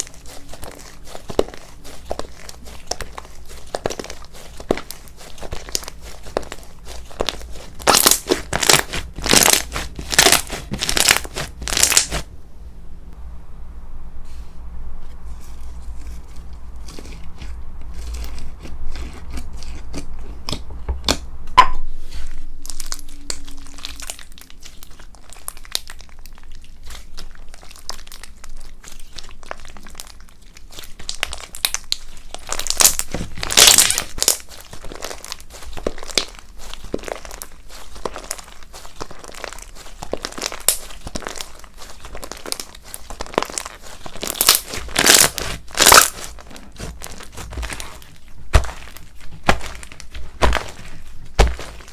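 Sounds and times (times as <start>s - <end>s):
slime squeezed by hand crackling: 0.0s - 12.3s, 22.6s - 51.9s.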